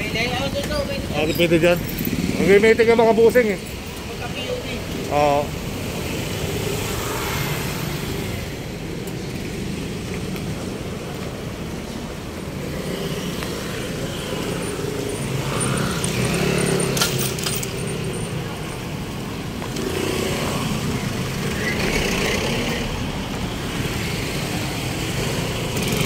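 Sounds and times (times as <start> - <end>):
road traffic: 0.0 - 26.0
vehicle engine: 0.0 - 26.0.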